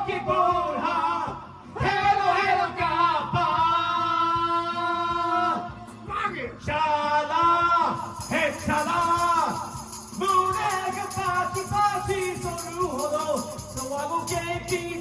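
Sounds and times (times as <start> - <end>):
karaoke backing track: 0.0 - 15.0
man singing: 0.0 - 15.0
jingling percussion: 8.0 - 15.0.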